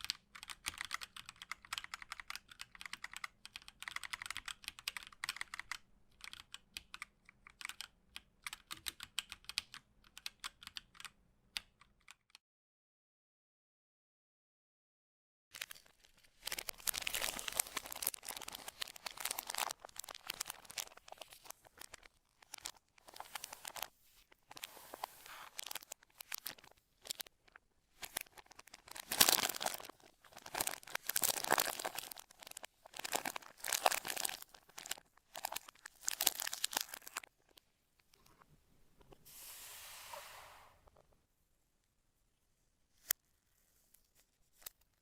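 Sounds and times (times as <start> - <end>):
packaging crinkling and tearing: 15.6 - 37.6.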